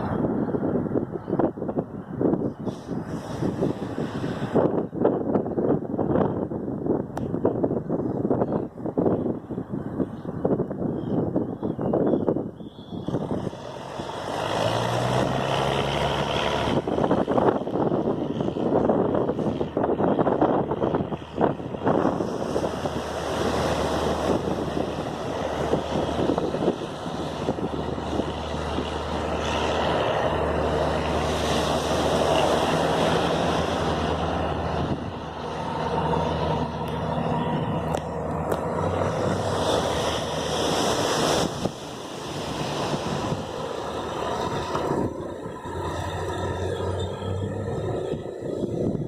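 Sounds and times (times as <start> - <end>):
wind noise on microphone: 0.0 - 49.0
surf: 12.8 - 49.0
engine running: 12.9 - 49.0.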